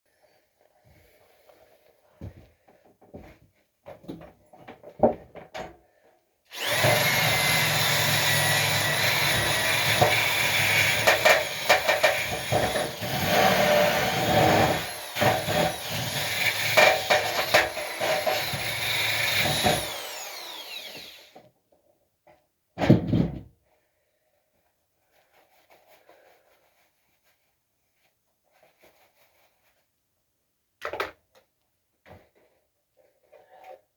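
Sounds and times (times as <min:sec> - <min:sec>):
power tool motor whine: 0:06.5 - 0:21.4.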